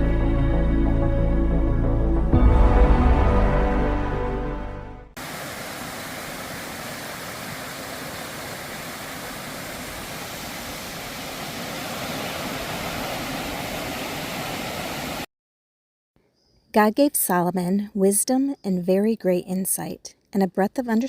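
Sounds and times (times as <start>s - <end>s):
background music: 0.0s - 5.2s
waterfall rushing: 5.2s - 15.3s.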